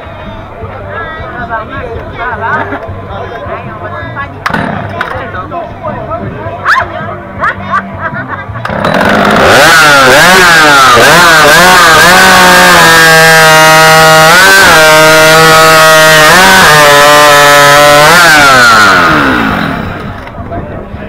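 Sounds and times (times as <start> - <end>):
chainsaw revving and cutting log: 4.5 - 4.9, 8.6 - 20.2.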